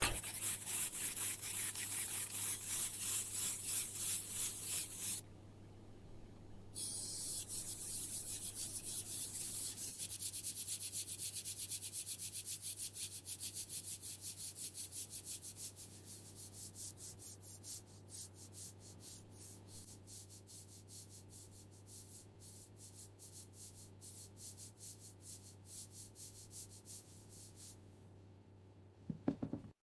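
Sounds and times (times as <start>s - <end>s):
abrasive scrubbing on rusted metal: 0.0s - 5.2s.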